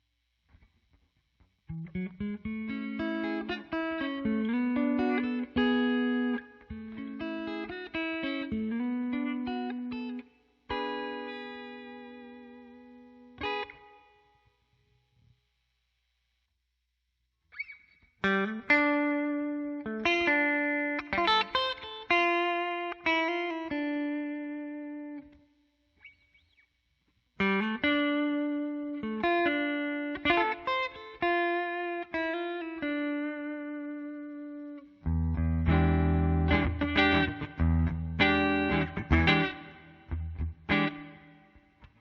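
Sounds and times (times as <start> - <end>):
electric guitar through amplifier: 0.5 - 14.4, 27.4 - 42.0.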